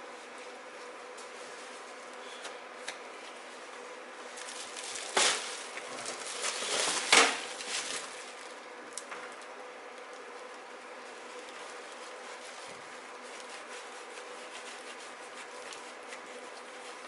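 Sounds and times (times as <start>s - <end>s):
paper towel rubbing: 10.4s - 17.0s.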